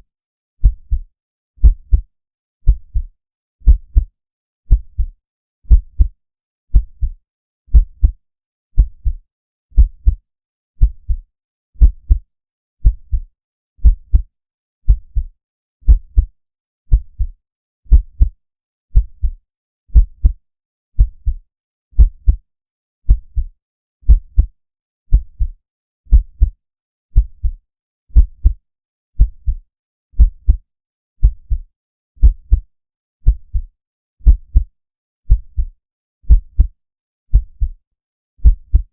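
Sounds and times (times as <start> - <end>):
heartbeat thumps: 2.7 - 3.1, 3.7 - 4.1, 4.7 - 5.1, 5.7 - 6.1, 6.7 - 8.2, 8.8 - 9.2, 9.8 - 10.2, 11.8 - 12.2, 13.8 - 14.3, 15.9 - 16.3, 17.9 - 18.3, 20.0 - 20.4, 21.0 - 21.4, 22.0 - 22.4, 24.1 - 24.5, 26.1 - 26.6, 28.2 - 28.6, 29.2 - 29.6, 30.2 - 30.6, 31.2 - 31.6, 32.2 - 32.6, 34.2 - 34.7, 36.3 - 36.7, 38.4 - 38.9.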